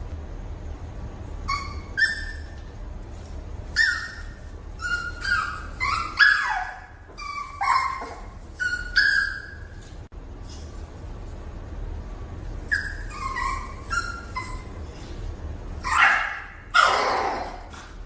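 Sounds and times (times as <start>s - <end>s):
dog whining and yipping: 1.4s - 2.6s, 3.7s - 9.9s, 12.6s - 14.8s, 15.8s - 17.7s.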